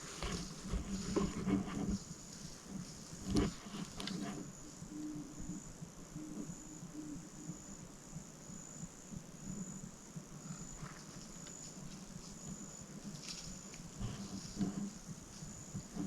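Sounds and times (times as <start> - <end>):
faint rustles and clicks: 0.0 - 5.6, 10.4 - 16.0
insects chirping: 0.0 - 16.0
low steady drone: 0.0 - 16.0.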